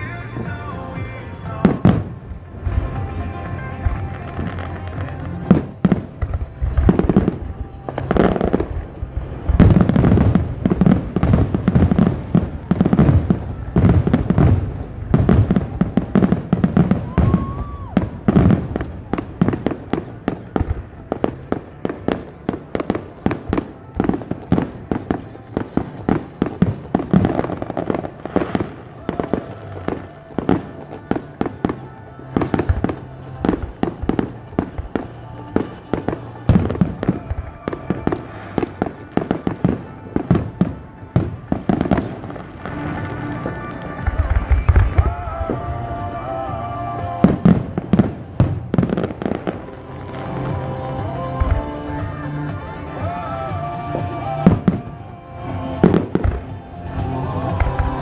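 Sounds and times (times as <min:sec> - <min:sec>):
fireworks booming and cracking: 0:00.0 - 0:58.0
music: 0:00.0 - 0:58.0.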